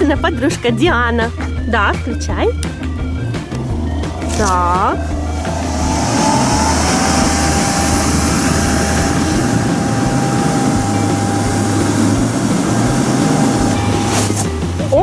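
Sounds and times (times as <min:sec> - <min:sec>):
electric air blower running: 0:03.0 - 0:15.0.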